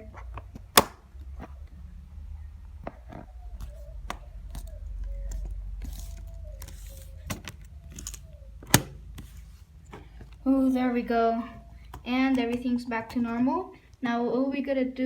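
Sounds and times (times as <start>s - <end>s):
hands handling small parts: 2.8s - 11.0s.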